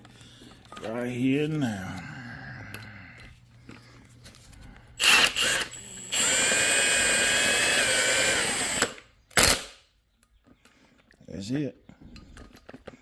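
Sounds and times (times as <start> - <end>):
impact wrench whining: 5.0 - 9.8.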